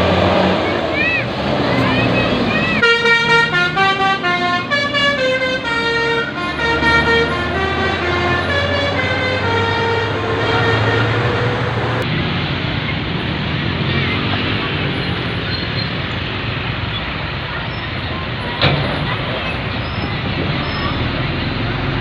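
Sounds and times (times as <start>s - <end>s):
vehicle engine running: 0.0s - 22.0s
multi-tone musical air horn: 2.8s - 12.0s.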